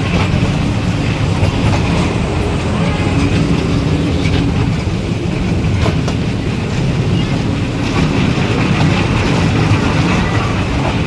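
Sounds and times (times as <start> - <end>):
toy train rumbling on track: 0.0 - 11.0
wheels clicking over rail joints: 0.0 - 11.0.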